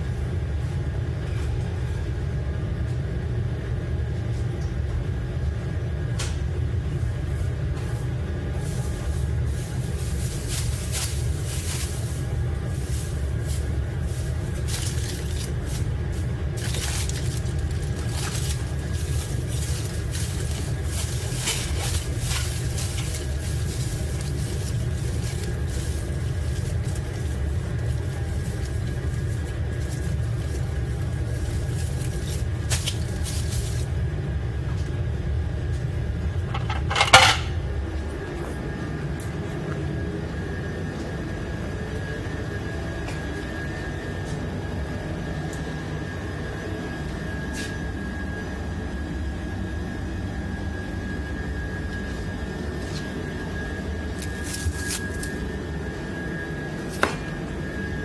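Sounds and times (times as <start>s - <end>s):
steady low hum: 0.0s - 58.0s
dishes and utensils clattering: 36.5s - 37.6s.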